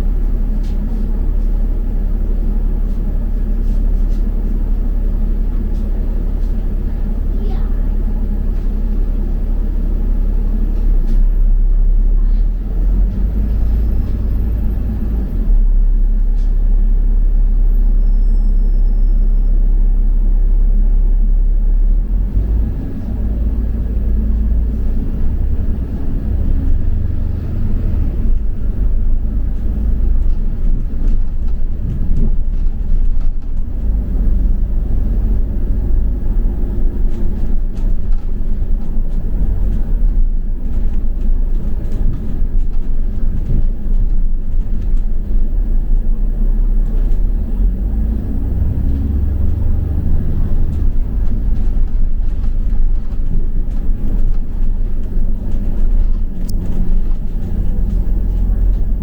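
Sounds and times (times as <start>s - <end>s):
bus engine and road rumble: 0.0s - 59.0s
light rattles and ticks: 28.1s - 59.0s.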